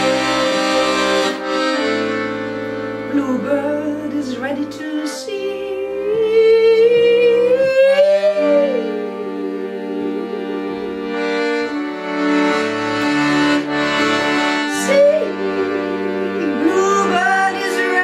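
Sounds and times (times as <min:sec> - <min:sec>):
reed instrument holding chords: 0:00.0 - 0:18.0
person singing: 0:03.1 - 0:11.7, 0:13.7 - 0:18.0.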